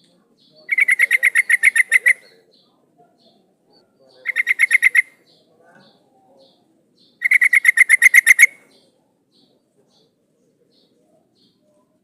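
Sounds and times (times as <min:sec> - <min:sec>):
bird chattering call: 0:00.6 - 0:02.6, 0:04.2 - 0:05.4, 0:06.4 - 0:08.8.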